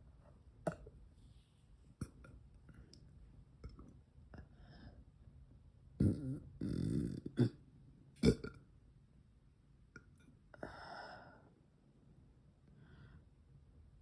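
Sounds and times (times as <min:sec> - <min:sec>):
soft breathy sound: 0:04.3 - 0:05.2, 0:10.5 - 0:11.6, 0:12.6 - 0:13.5.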